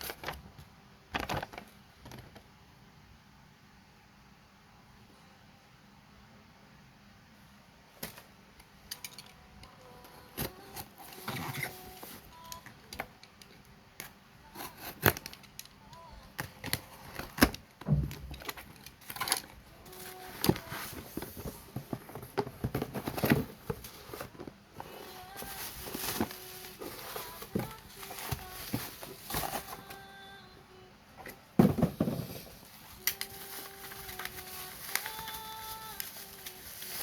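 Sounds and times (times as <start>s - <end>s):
packaging rustling: 16.6s - 30.2s, 31.7s - 37.0s.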